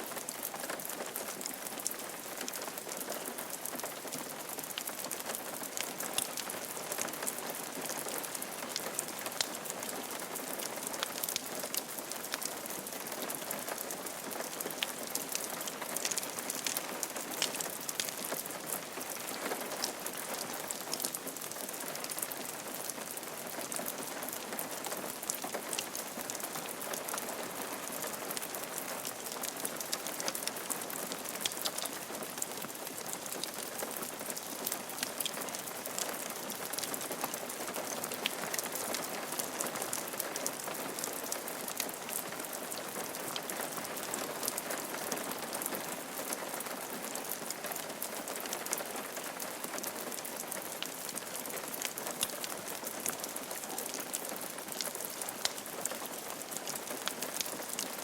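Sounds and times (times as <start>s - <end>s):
rain falling on a roof: 0.0s - 58.0s
raindrops ticking: 51.8s - 57.9s.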